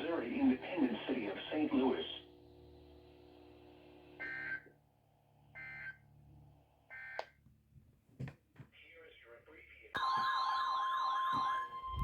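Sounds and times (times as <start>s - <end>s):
faint steady hum: 0.0s - 7.5s.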